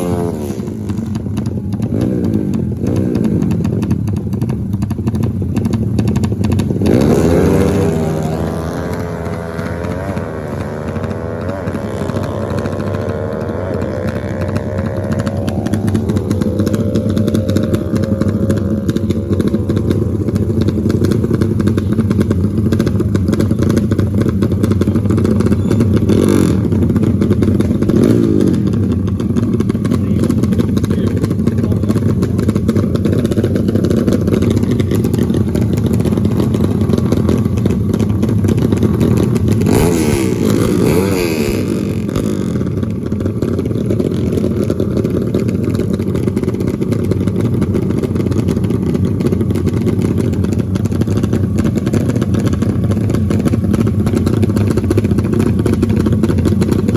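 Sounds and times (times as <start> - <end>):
motorcycle engines revving: 0.0 - 56.9.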